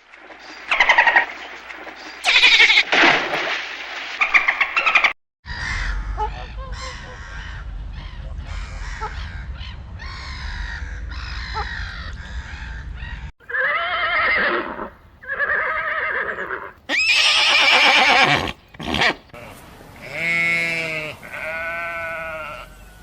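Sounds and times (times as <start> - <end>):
goat bleating: 2.2 - 2.8, 13.5 - 23.0
horse neighing: 2.2 - 2.9, 13.4 - 19.3
low wind rumble: 5.4 - 20.1.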